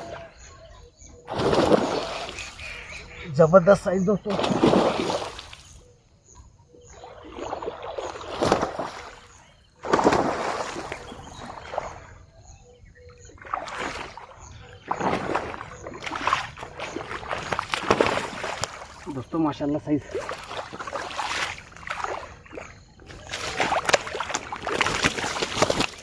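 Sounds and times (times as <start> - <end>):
water splashing and sloshing: 0.0 - 2.9, 4.2 - 5.8, 6.8 - 26.0.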